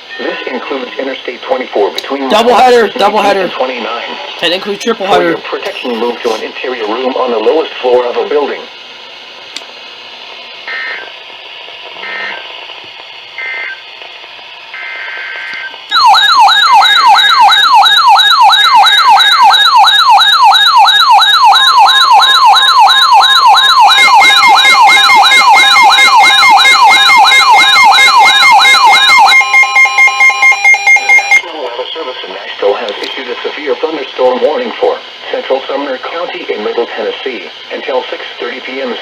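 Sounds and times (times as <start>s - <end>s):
loud siren-like warble: 10.6s - 11.1s, 12.0s - 12.5s, 13.4s - 13.8s, 14.7s - 31.5s
digital data bursts: 12.0s - 12.6s, 14.7s - 31.4s
steady alert tone: 23.9s - 31.4s.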